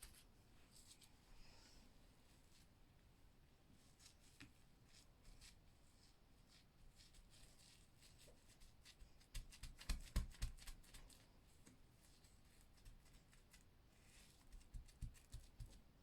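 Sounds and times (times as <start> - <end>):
hands rustling and clicking: 8.8 - 11.8.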